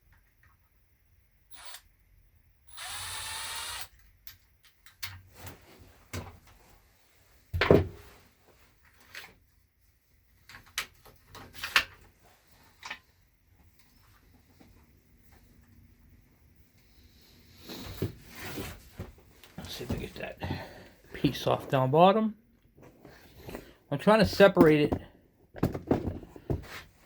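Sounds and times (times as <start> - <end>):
power drill spinning: 1.5 - 1.9, 2.7 - 4.0
clicks and knocks of small tools: 4.0 - 5.2.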